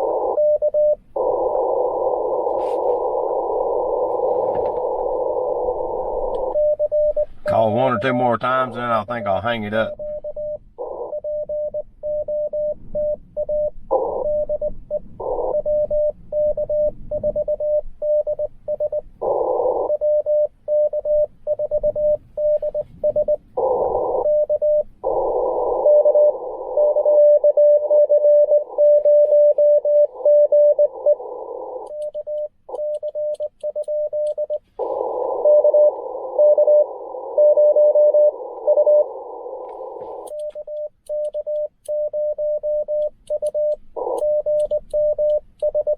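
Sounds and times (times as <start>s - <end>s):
faint morse signal: 0.0s - 45.9s
morse code sidetone: 0.0s - 45.9s
radio band hiss: 1.2s - 6.6s, 7.3s - 10.0s, 28.6s - 31.8s, 34.6s - 37.4s, 38.1s - 40.3s.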